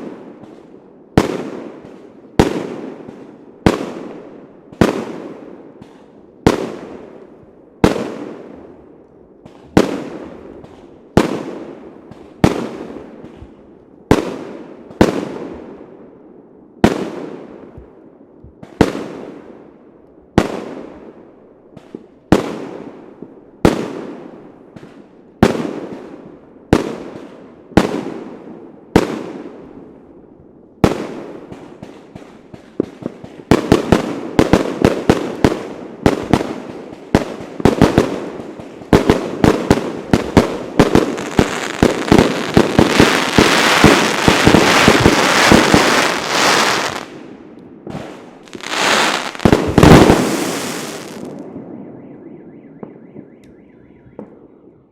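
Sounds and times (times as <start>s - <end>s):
fireworks bangs with echo: 7.8s - 16.0s, 30.8s - 53.4s
small firework cracks: 37.6s - 47.2s, 47.9s - 51.4s.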